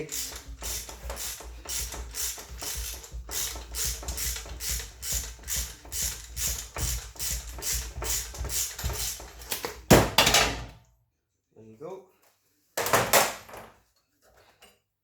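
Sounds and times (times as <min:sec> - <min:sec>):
socket ratchet clicking: 0:00.0 - 0:09.7.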